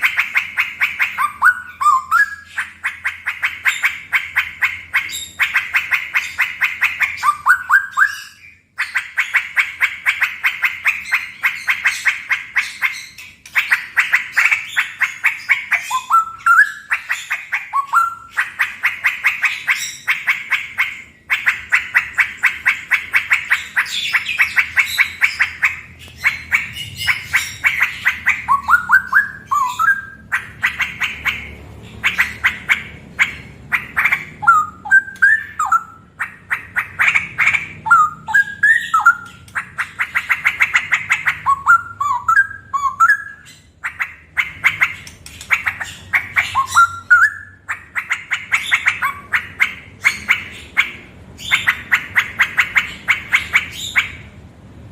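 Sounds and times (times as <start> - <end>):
bird singing loudly: 0.0 - 54.3.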